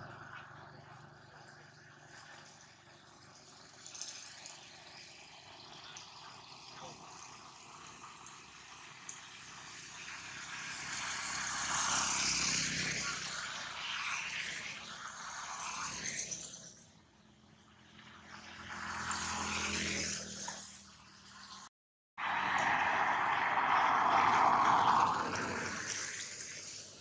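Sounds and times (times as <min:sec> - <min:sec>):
vehicle passing: 0:17.9 - 0:21.5, 0:22.2 - 0:27.0.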